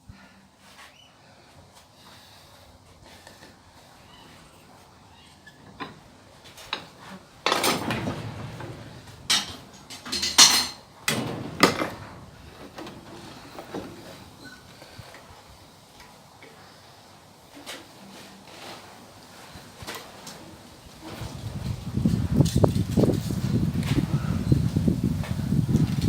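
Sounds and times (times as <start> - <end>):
steel clanking together: 6.7 - 12.2.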